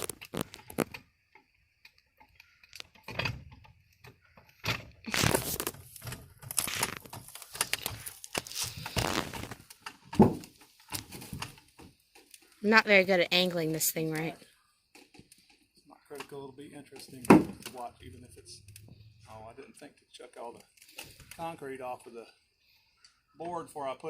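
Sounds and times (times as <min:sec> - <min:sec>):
knocks scrapes and rattles of boards: 0:03.0 - 0:12.3.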